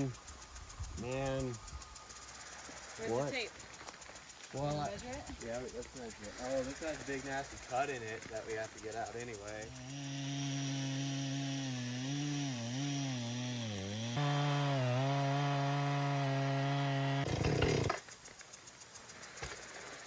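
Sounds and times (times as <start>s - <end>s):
rough grinding noise: 4.6s - 18.0s.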